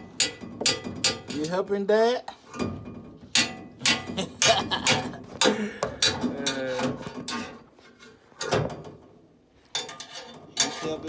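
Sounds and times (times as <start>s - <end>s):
tools knocking and clicking: 0.0s - 1.5s, 2.6s - 7.6s.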